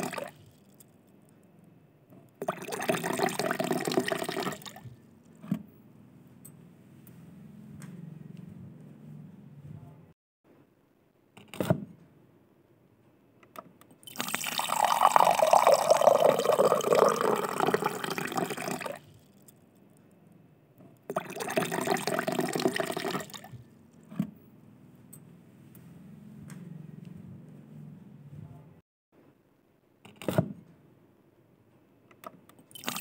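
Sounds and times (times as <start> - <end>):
water running: 2.4 - 4.9, 14.1 - 19.0, 21.1 - 23.6, 32.7 - 33.0.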